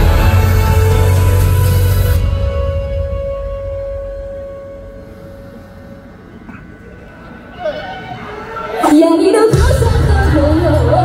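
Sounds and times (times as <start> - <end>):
loud dark music: 0.0 - 6.2, 9.5 - 11.0.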